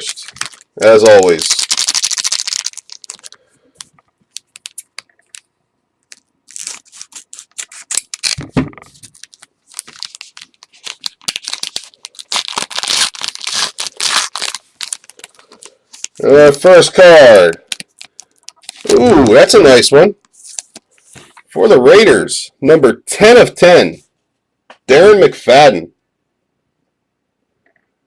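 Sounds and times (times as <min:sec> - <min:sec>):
wrapper tearing and crinkling: 0:00.0 - 0:05.4, 0:06.1 - 0:19.6.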